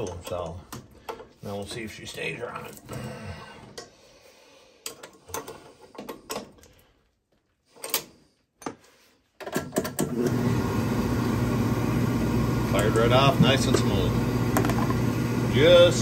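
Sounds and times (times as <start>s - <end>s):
oil furnace burner humming: 10.1s - 16.0s.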